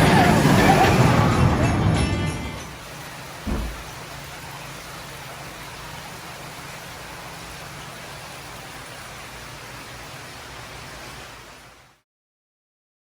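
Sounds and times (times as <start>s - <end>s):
steady hiss: 2.7s - 12.0s.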